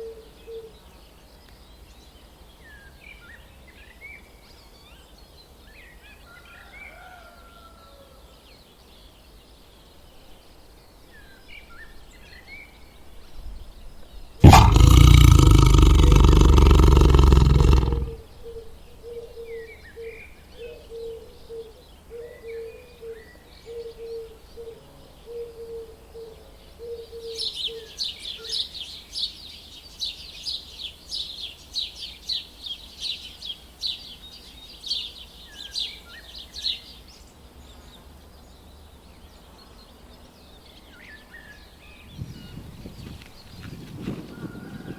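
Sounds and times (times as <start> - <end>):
loud deep animal call: 14.4 - 18.2.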